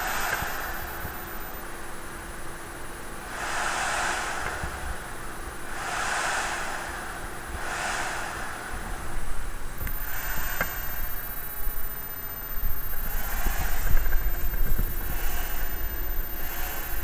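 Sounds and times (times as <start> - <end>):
graphics card cooler fan whooshing: 0.0 - 1.8, 3.0 - 17.0
sharp click: 0.1 - 1.5, 9.8 - 15.7.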